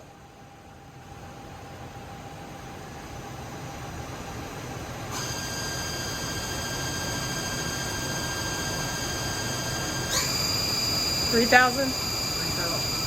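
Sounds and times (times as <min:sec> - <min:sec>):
machine mechanical hum: 0:00.0 - 0:13.0
high multi-tone machine whine: 0:04.6 - 0:13.0.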